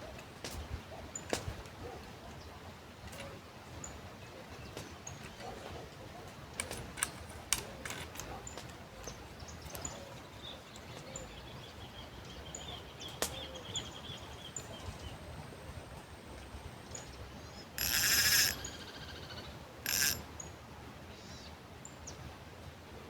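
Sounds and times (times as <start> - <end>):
birds chirping: 8.1 - 20.6
steady background hiss: 8.6 - 23.0.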